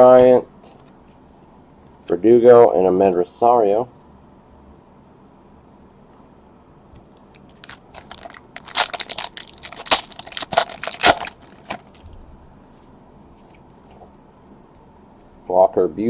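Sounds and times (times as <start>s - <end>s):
foil wrapper crinkling and tearing: 7.4s - 12.0s.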